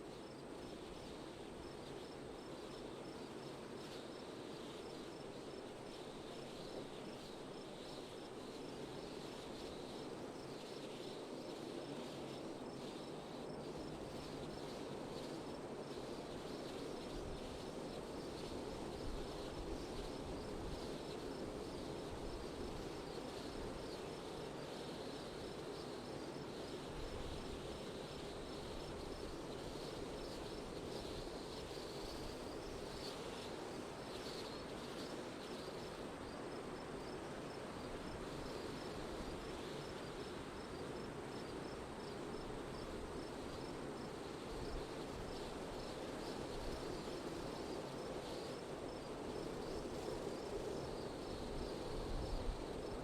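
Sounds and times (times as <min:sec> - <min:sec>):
steady wind noise: 0:11.3 - 0:53.0.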